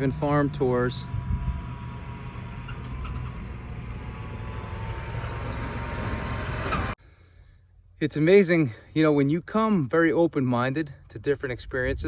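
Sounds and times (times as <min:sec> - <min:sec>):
tractor engine rumbling: 0:00.0 - 0:07.4.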